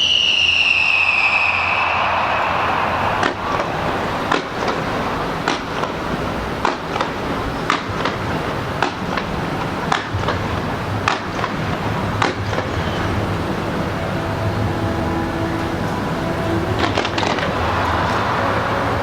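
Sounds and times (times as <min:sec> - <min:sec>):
firework whistle: 0:00.0 - 0:07.0, 0:12.2 - 0:19.0
steady background roar: 0:00.0 - 0:19.0
firework pops and bangs: 0:03.2 - 0:12.9.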